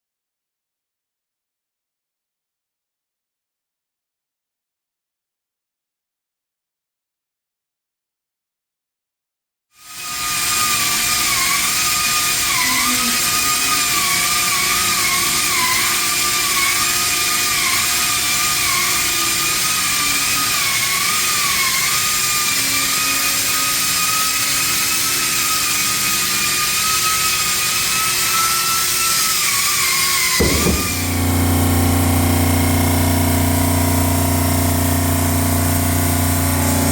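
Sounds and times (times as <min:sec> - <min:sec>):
high whine: 0:30.4 - 0:36.9
waterjet spray hissing: 0:30.4 - 0:36.9.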